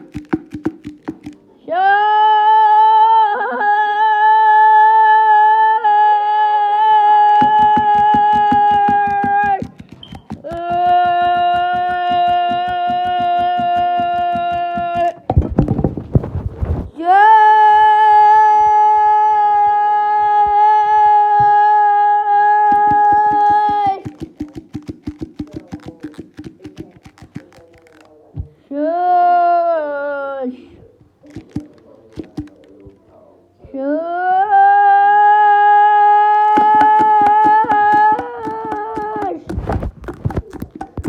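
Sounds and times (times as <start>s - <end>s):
quick regular taps: 0.0s - 1.4s, 7.4s - 16.3s, 22.6s - 28.6s, 31.0s - 33.0s, 36.4s - 41.0s
evenly spaced clicks: 8.4s - 15.2s.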